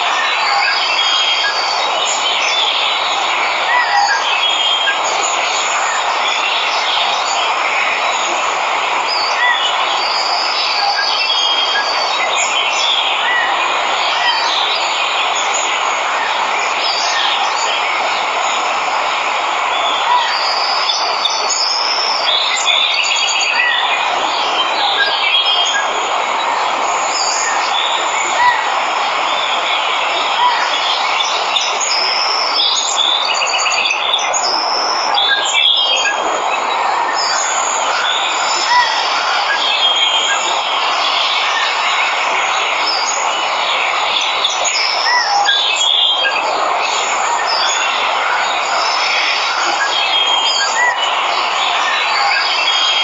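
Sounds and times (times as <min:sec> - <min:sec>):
waterfall rushing: 0:00.0 - 0:53.0
birds chirping and trilling: 0:19.5 - 0:53.0
birds chirping and whistling: 0:47.0 - 0:53.0.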